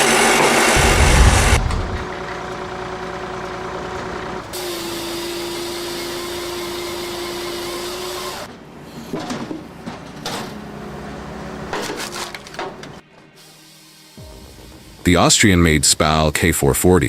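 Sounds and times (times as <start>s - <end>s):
heavy vehicle engine running: 0.0s - 13.0s
loud rumble: 0.8s - 4.5s
steady whine: 0.8s - 4.6s.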